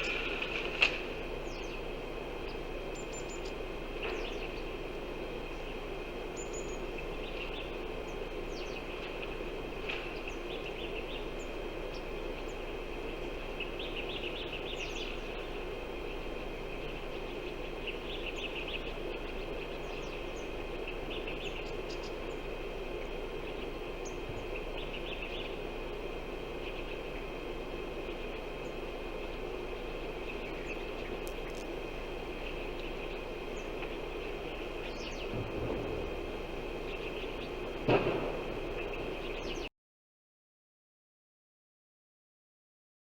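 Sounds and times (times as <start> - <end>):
small birds chirping: 0.0 - 39.7
steady rushing noise: 25.1 - 39.6.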